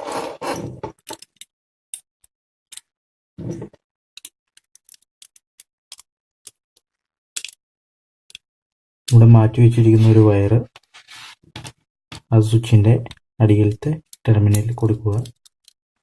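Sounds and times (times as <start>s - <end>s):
brief scrape: 0.0s - 0.9s
small irregular clicks and ticks: 1.0s - 2.9s, 4.2s - 7.6s, 13.0s - 16.0s.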